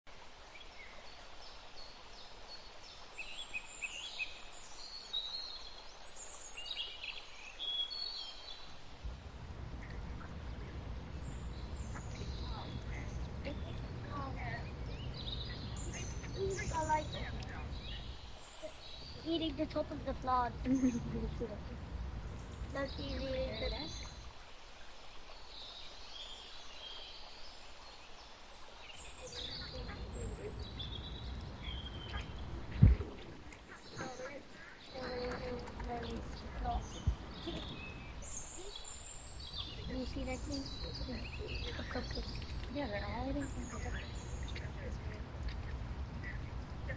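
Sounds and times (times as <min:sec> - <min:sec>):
outdoor hiss: 0:00.1 - 0:46.9
birds singing and chirping: 0:09.6 - 0:24.4, 0:25.3 - 0:46.9.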